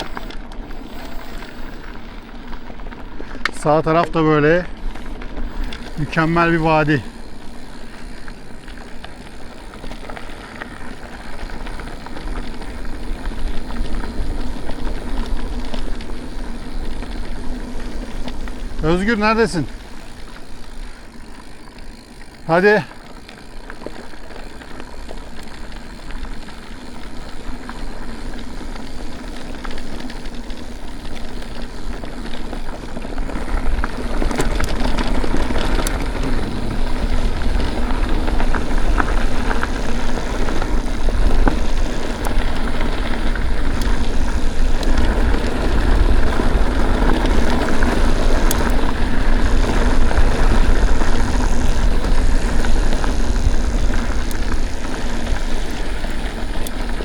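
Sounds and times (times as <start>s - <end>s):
tyres crunching over gravel: 0.0s - 57.0s
wind rumbling on microphone: 27.0s - 57.0s.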